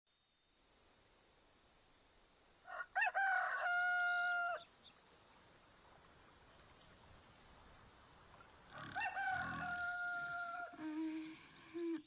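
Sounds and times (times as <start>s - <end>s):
cricket chirps: 0.1s - 5.3s, 8.3s - 12.0s
rooster crowing: 2.7s - 4.6s, 8.7s - 10.8s.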